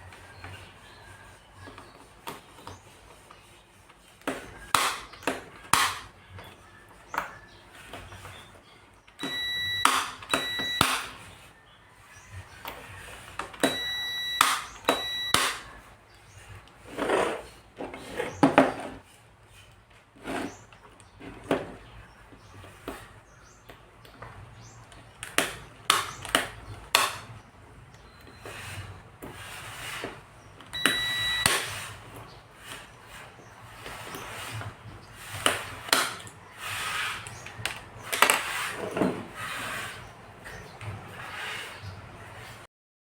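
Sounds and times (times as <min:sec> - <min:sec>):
short electronic beeps: 0:09.2 - 0:11.3, 0:13.6 - 0:15.8, 0:30.8 - 0:31.9.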